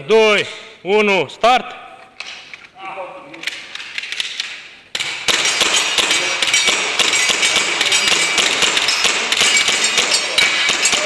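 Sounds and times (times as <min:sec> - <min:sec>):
pellets striking metal targets: 0:04.9 - 0:11.0.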